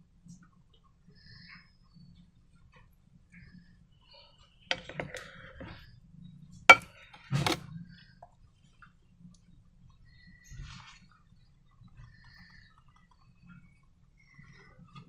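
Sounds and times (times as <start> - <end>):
objects knocking and clinking: 4.7 - 5.8, 6.7 - 7.6.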